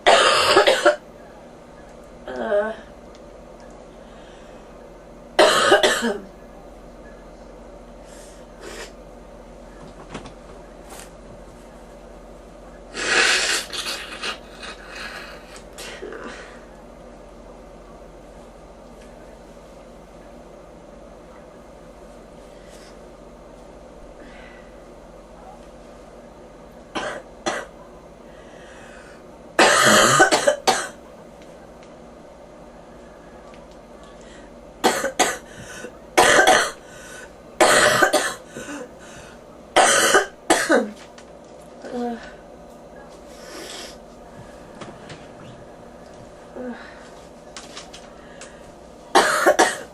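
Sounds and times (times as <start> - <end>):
person coughing: 0.0 - 1.0, 5.4 - 6.3, 27.0 - 27.7, 29.6 - 31.0, 34.8 - 35.5, 36.2 - 36.8, 37.6 - 38.9, 39.8 - 41.0, 49.1 - 49.9
person breathing: 4.0 - 4.8, 14.5 - 16.7, 28.3 - 29.2, 34.1 - 34.6, 35.5 - 36.0, 36.8 - 37.4, 38.5 - 39.4, 46.5 - 47.3.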